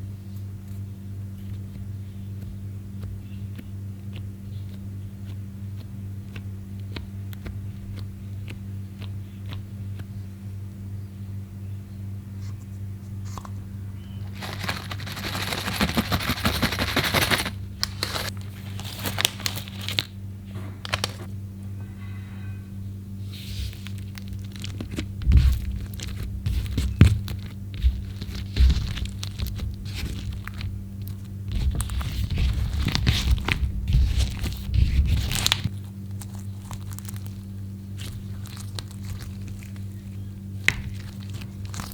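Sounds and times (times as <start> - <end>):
steady low hum: 0.0 - 41.9
slime squelching and crackling: 14.2 - 20.2, 23.3 - 41.9.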